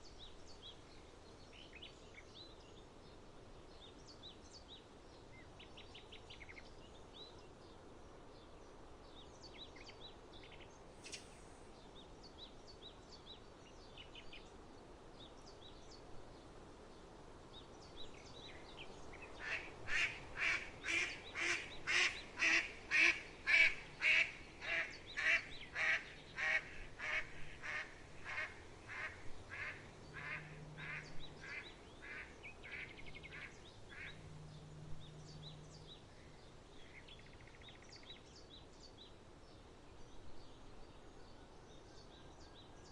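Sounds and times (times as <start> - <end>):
small birds chirping: 15.2 - 41.4
waterfowl quacking calls: 19.4 - 34.2.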